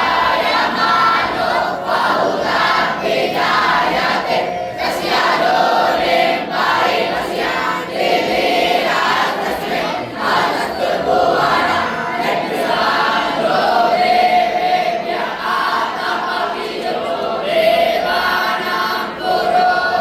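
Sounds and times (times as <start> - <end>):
crowd chanting: 0.0 - 20.0.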